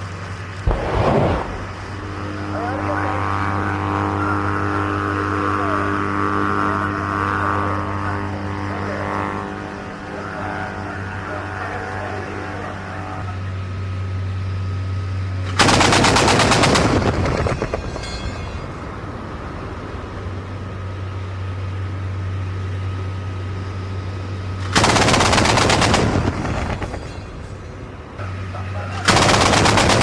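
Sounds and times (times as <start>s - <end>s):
vehicle engine humming: 0.0s - 15.9s, 16.8s - 29.9s
autocannon bursts: 15.5s - 17.9s, 24.6s - 27.1s, 29.0s - 30.0s.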